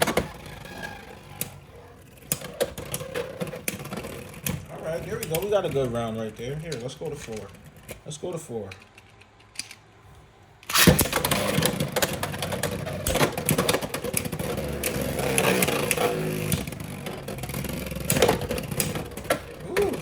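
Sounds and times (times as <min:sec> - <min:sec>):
spinning tops whirring and grinding: 0:10.6 - 0:20.0.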